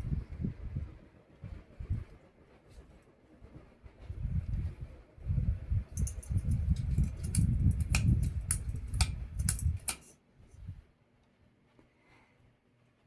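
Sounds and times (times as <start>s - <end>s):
fan clicking and ticking: 5.4s - 10.2s.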